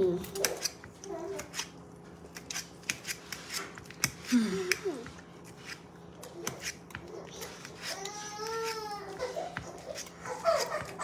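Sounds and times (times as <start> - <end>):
objects clicking and snipping: 2.3 - 8.8.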